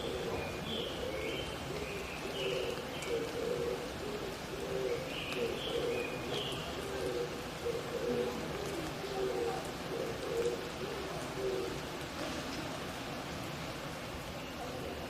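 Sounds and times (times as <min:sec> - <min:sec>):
small bird calling: 0:00.0 - 0:11.8
dove cooing: 0:00.0 - 0:13.6.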